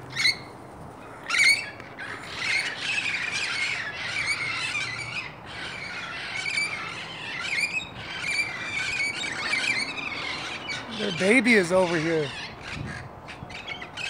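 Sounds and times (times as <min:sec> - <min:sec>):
parrots squawking and chattering: 0:00.1 - 0:14.0.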